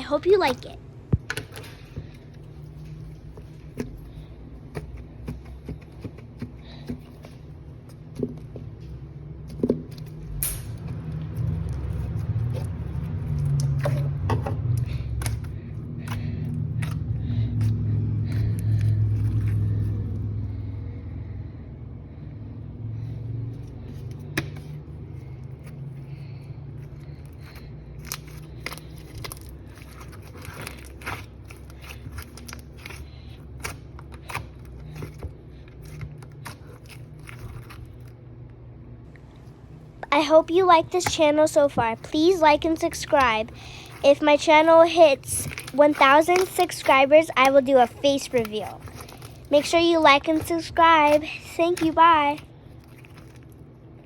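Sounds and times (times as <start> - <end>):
slime clicks and crackles: 45.1 - 54.0.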